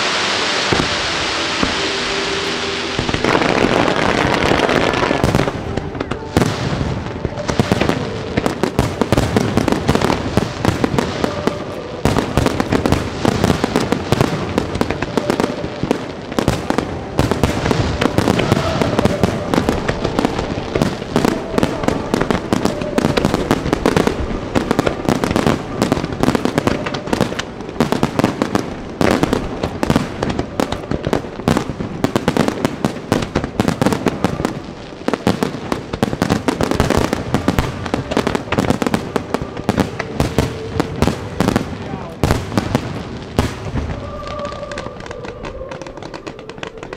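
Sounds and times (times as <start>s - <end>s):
fireworks bursting and crackling: 0.0s - 46.9s.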